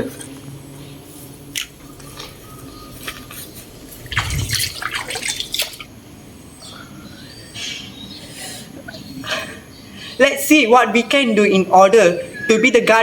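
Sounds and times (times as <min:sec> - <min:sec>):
water dripping and splashing: 0:03.0 - 0:06.0.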